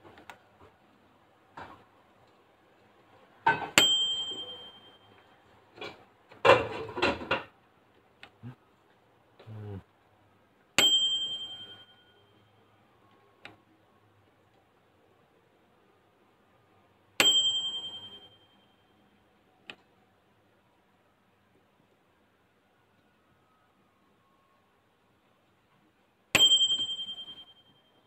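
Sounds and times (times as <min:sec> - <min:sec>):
microwave bell dinging: 0:03.8 - 0:05.3, 0:10.8 - 0:12.4, 0:17.2 - 0:18.8, 0:26.4 - 0:28.0.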